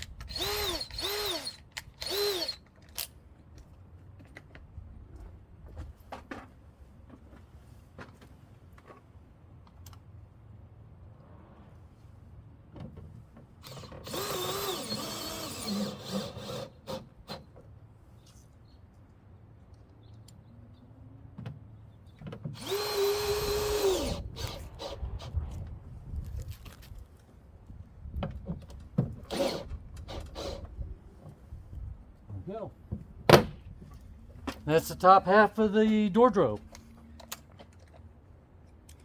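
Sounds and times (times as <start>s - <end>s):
cordless drill drilling: 0.2s - 2.6s, 13.6s - 17.1s, 22.6s - 25.4s, 29.3s - 30.7s.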